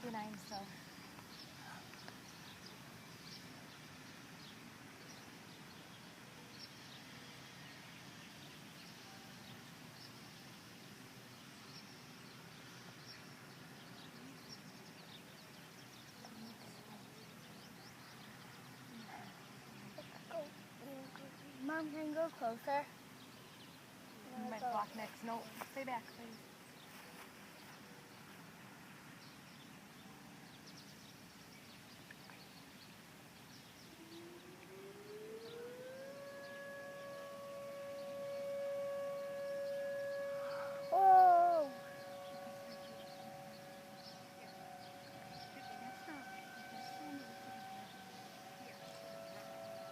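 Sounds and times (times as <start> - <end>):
faint background noise: 0.0 - 49.9
distant warning sirens wailing: 33.8 - 49.9.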